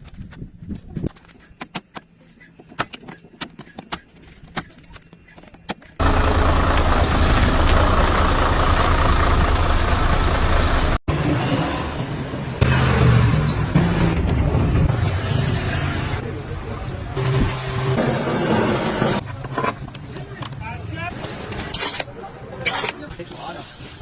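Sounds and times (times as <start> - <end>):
loud steady engine: 6.0 - 11.2.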